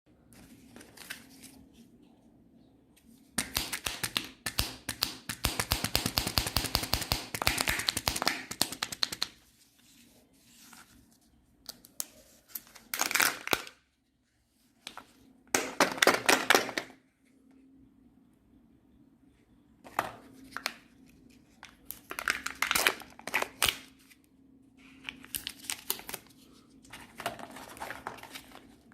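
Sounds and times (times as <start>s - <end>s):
wrappers crinkling and crackling: 24.9s - 28.9s.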